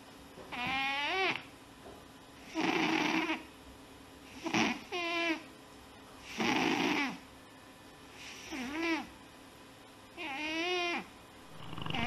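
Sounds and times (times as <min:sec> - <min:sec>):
noisy unpitched snore: 0:06.3 - 0:07.2, 0:11.5 - 0:12.0
whistly snore: 0:06.3 - 0:07.2, 0:10.2 - 0:12.0.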